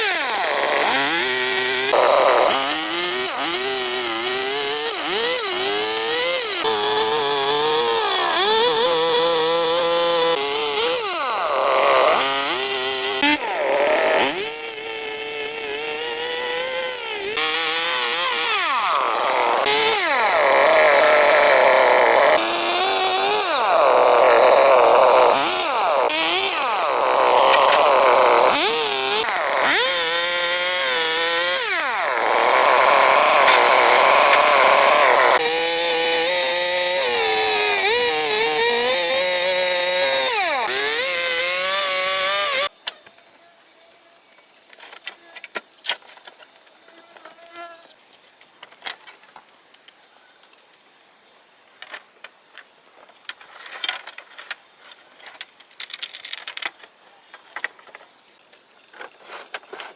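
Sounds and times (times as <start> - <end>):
chainsaw cutting wood: 0.0 - 42.7.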